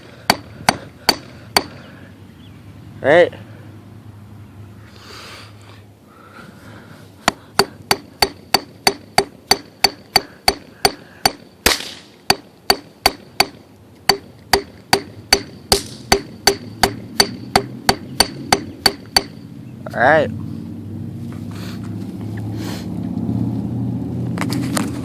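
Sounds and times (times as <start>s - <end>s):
hammer blows with ringing clicks: 0.0s - 1.9s, 7.2s - 19.5s.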